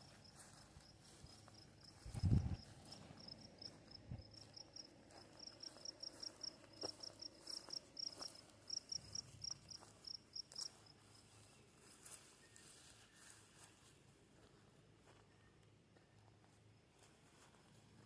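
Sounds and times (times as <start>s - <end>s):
faint insect chirping: 0.0s - 11.2s.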